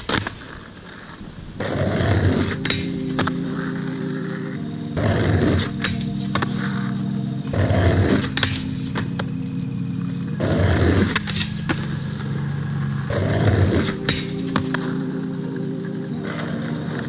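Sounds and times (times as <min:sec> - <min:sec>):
skateboard clacks: 0:00.0 - 0:03.7
skateboard rolling on pavement: 0:00.0 - 0:04.3, 0:07.5 - 0:14.9.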